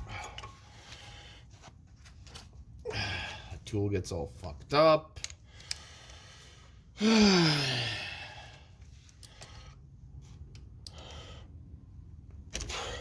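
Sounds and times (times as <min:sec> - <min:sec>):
man sighing: 0:02.8 - 0:03.6, 0:07.0 - 0:08.6.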